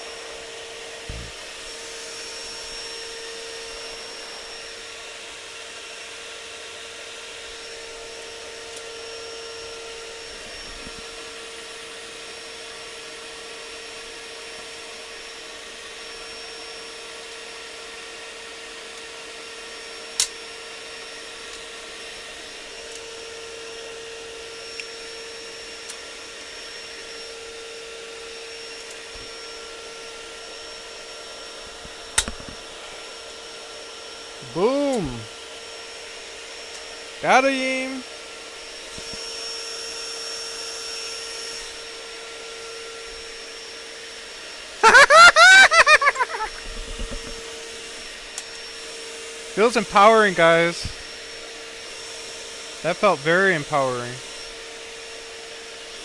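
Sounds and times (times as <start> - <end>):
vacuum cleaner humming: 0.0 - 56.0.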